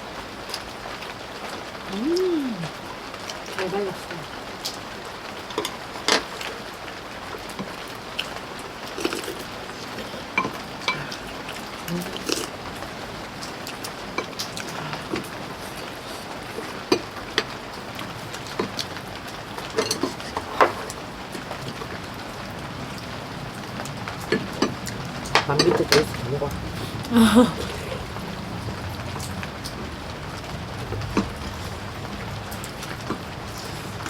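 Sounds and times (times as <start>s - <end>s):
steady rain: 0.0s - 34.0s
chewing and slurping: 8.1s - 21.9s.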